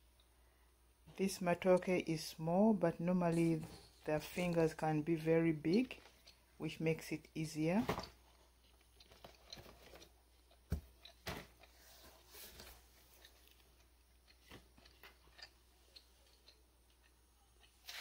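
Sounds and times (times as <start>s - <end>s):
knife peeling bananas: 8.8s - 18.0s.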